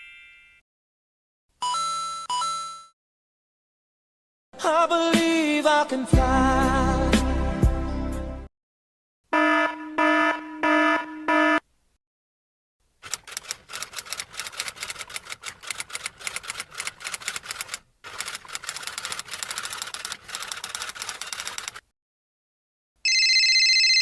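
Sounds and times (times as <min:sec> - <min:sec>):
rapid keystroke clicks: 0:13.0 - 0:21.8.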